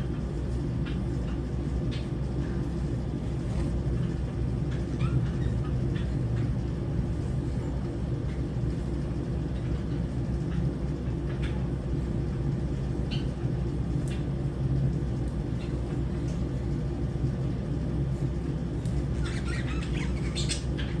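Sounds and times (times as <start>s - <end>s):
lovebirds chirping: 19.2s - 21.0s.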